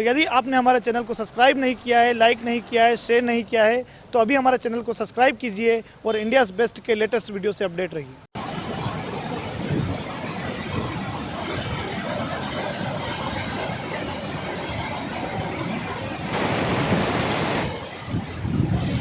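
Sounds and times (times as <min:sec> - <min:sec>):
waterfall rushing: 0:08.4 - 0:19.0.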